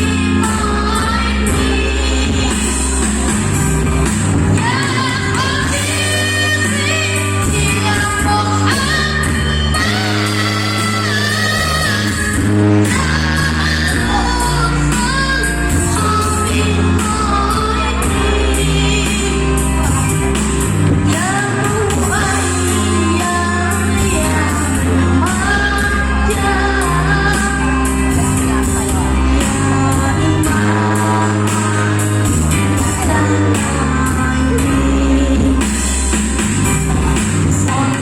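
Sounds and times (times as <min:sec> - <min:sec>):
backing track with bass and beat: 0:00.0 - 0:38.0
girl singing devotional song: 0:04.6 - 0:19.4, 0:21.1 - 0:27.8, 0:32.7 - 0:35.6.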